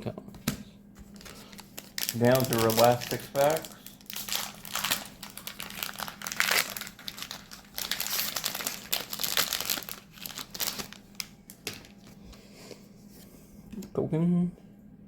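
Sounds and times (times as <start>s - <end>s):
foil wrapper crinkling: 1.0s - 12.2s.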